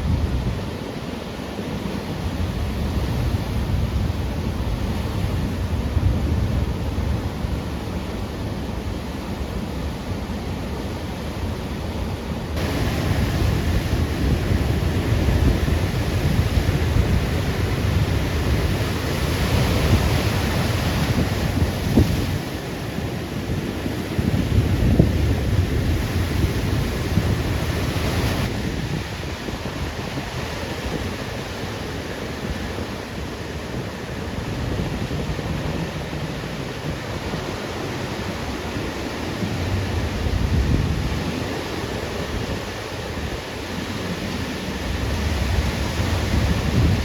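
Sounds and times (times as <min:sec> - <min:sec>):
wind rumbling on microphone: 0:00.0 - 0:08.0, 0:12.6 - 0:47.0
ocean surf breaking: 0:12.4 - 0:47.0.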